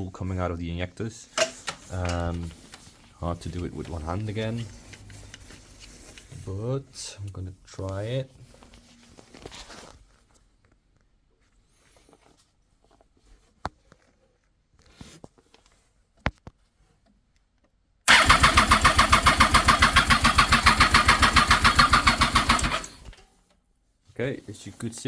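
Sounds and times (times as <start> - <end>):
starter cranking engine: 18.1 - 23.2.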